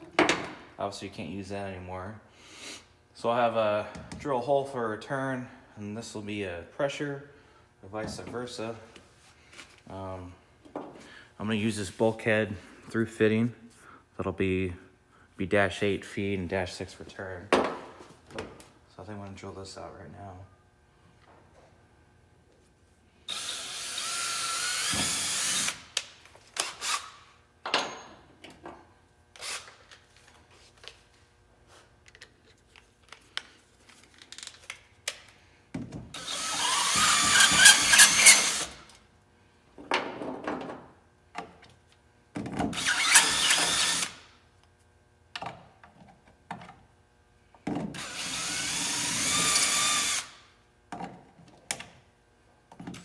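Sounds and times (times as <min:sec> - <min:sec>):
power drill boring: 0:23.3 - 0:25.9, 0:36.2 - 0:38.8, 0:42.8 - 0:44.2, 0:48.0 - 0:50.4.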